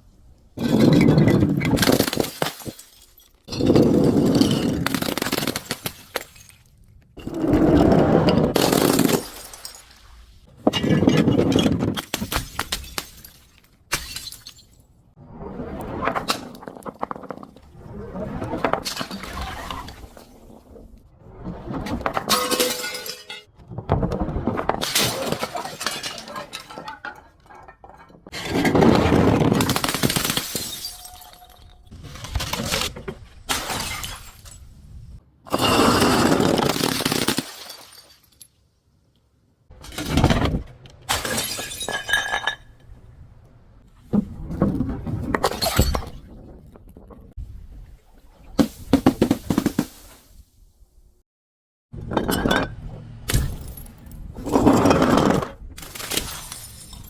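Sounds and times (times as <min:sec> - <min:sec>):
glass bottles shattering: 0:00.6 - 0:07.5, 0:08.4 - 0:10.0, 0:10.7 - 0:14.8, 0:22.2 - 0:23.5, 0:24.8 - 0:32.5, 0:33.5 - 0:34.7, 0:35.5 - 0:38.6, 0:41.1 - 0:42.8, 0:45.4 - 0:46.2, 0:52.1 - 0:57.0.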